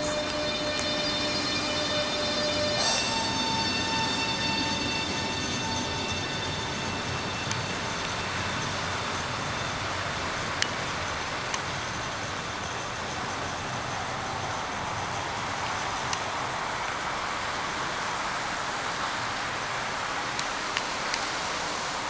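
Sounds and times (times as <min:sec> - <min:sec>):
electric train motor whine: 0:00.0 - 0:16.1
train rolling noise: 0:00.0 - 0:22.0.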